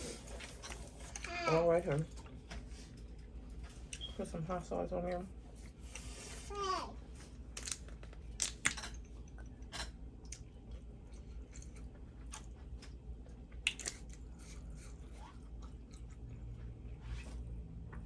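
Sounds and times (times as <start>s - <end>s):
wet mouth clicks and smacks: 13.6s - 14.2s.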